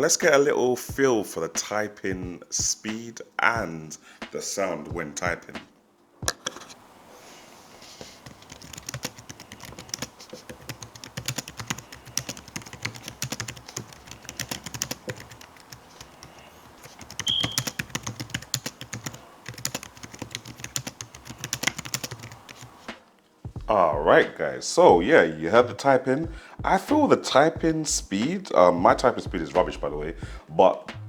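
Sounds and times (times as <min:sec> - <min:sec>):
clicky keyboard keystrokes: 0:08.2 - 0:22.8.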